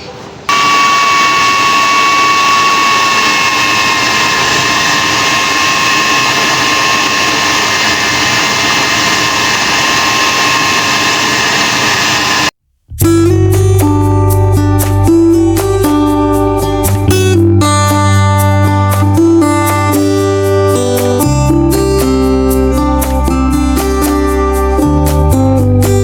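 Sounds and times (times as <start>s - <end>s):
blender motor whining: 0.5s - 12.6s.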